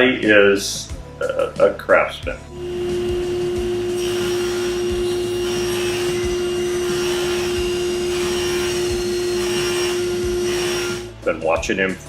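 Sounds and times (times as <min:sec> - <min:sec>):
electric motor humming: 0:02.5 - 0:11.1.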